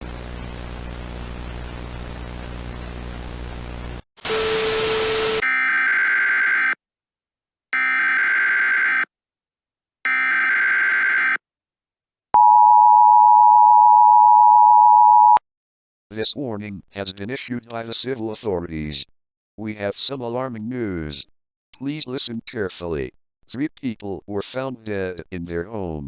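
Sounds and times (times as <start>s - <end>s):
data tone bursts: 7.8s - 9.0s, 10.1s - 11.4s, 12.4s - 15.4s
two-tone attention signal: 12.4s - 15.4s.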